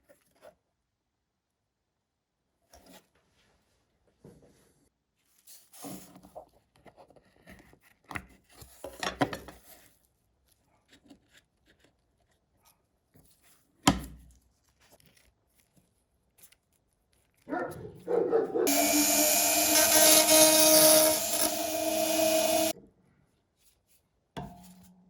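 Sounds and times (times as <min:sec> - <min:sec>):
rubbing and scraping of small objects: 0:18.7 - 0:22.8.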